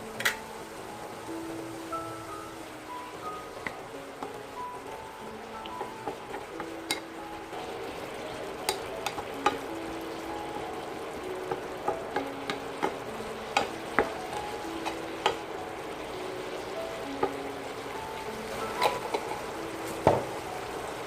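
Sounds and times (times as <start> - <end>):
soft background music: 0.0 - 21.0
vegetables sizzling in a pan: 0.0 - 21.0
spatula scraping a pan: 12.2 - 15.4, 18.5 - 20.0.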